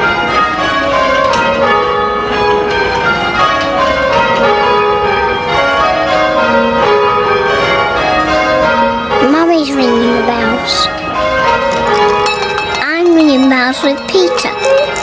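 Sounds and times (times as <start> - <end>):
church bells ringing: 0.0 - 15.0.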